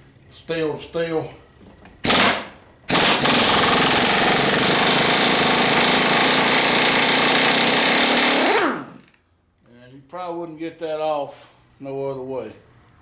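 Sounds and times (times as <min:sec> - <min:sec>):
impact wrench hammering on bolt: 0:02.0 - 0:08.7.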